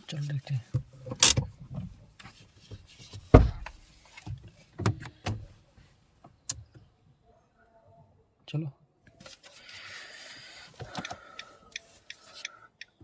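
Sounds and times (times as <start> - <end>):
car door opening and shutting: 0.8 - 2.0, 3.2 - 5.5.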